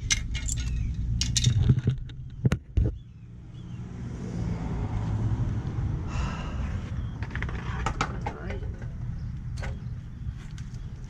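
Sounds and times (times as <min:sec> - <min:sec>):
scooter parts clicking: 0:00.0 - 0:02.9
vehicle rumble: 0:00.0 - 0:11.0.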